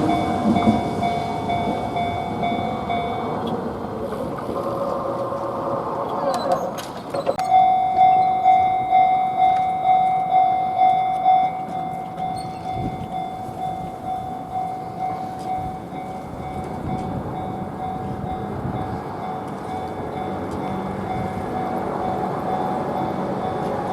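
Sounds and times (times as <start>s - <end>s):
level crossing warning bell: 0.0s - 4.6s, 7.4s - 23.9s.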